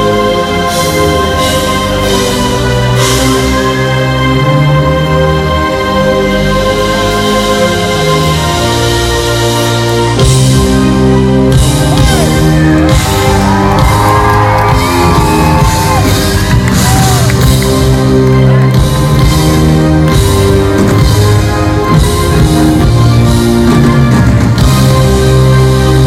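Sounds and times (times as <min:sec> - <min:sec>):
live band music: 0:00.0 - 0:26.0
audience screams and whoops: 0:11.6 - 0:20.9.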